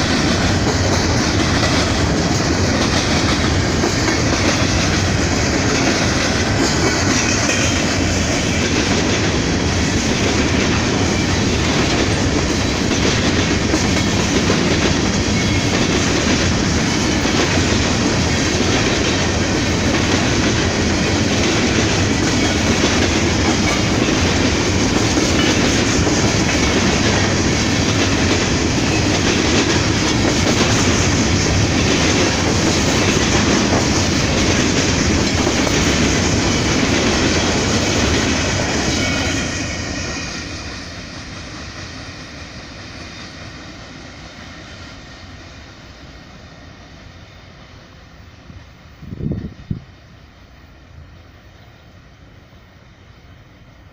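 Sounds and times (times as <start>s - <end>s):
wheels clacking over rail joints: 0.0s - 42.4s
freight train rumbling past: 0.0s - 53.9s.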